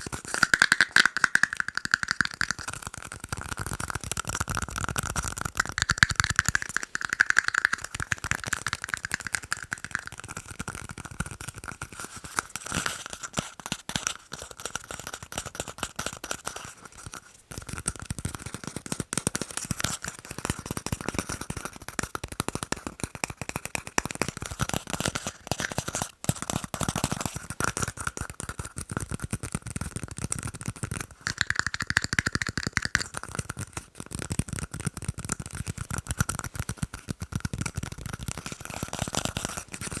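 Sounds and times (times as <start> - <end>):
rapid tapping on tiny cups: 0.0 - 40.0.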